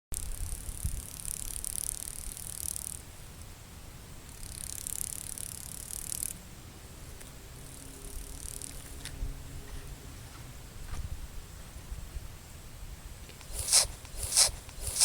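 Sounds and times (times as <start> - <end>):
tortoise sneezing: 13.4 - 15.0.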